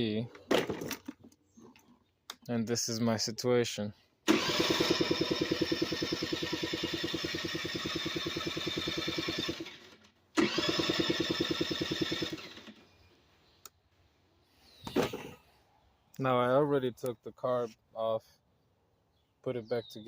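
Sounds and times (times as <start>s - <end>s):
electric starter cranking engine: 4.2s - 13.0s.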